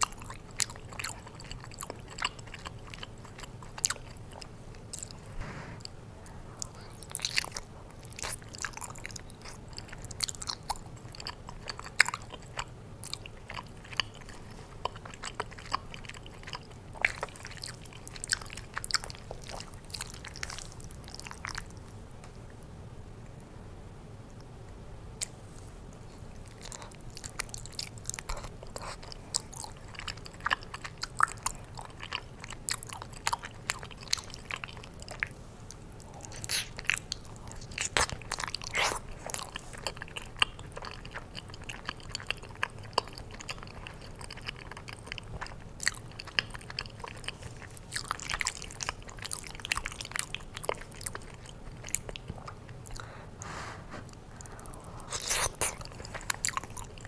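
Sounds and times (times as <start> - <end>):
wet chewing: 0.0 - 6.0, 6.6 - 22.0, 26.0 - 57.0
biting and crunching: 26.4 - 53.1, 54.0 - 57.0
mouth clicks and smacks: 54.0 - 56.8.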